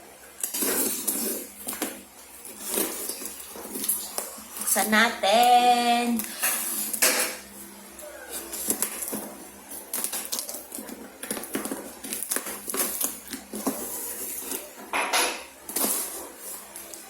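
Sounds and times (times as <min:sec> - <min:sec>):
packaging crackling and tearing: 0:08.3 - 0:14.7.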